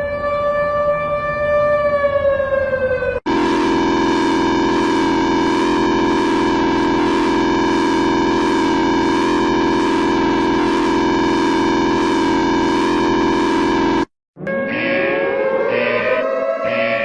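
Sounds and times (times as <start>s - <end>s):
electronic alarm tone: 3.2s - 14.1s.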